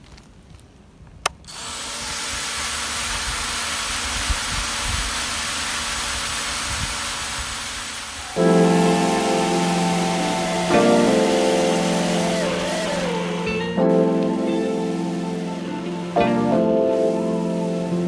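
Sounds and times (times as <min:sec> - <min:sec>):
click: 0:01.2 - 0:01.4
quadcopter motors whirring: 0:01.5 - 0:08.6
background piano music: 0:08.3 - 0:18.0.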